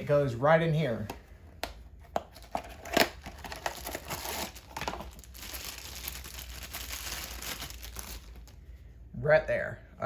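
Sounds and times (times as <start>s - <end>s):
material crinkling and rustling: 2.0s - 8.7s.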